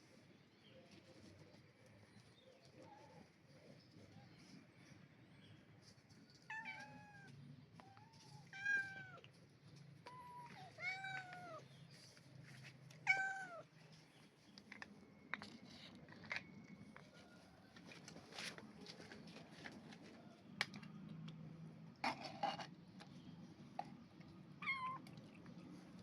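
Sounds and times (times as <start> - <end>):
cat meowing: 6.5 - 9.3, 10.1 - 11.7, 13.0 - 13.7, 24.6 - 25.2.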